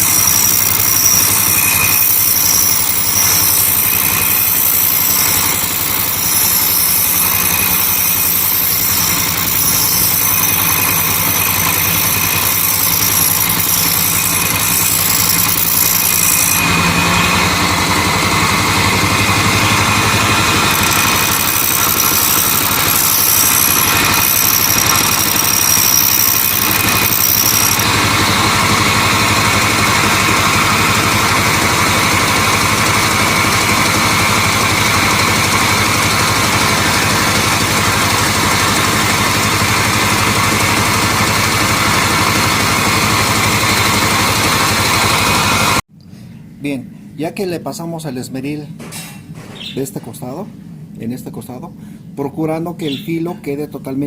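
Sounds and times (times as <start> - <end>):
high grinding hiss: 0.0 - 28.8
bench grinder motor hum: 0.0 - 45.8.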